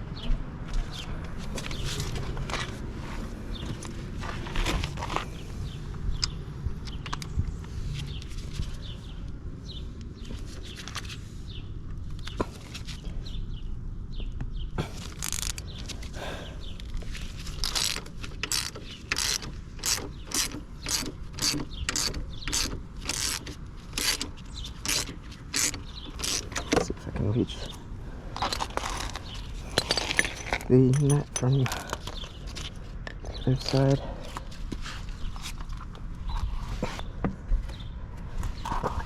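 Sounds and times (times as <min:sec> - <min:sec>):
socket ratchet clicking: 0:17.6 - 0:26.8.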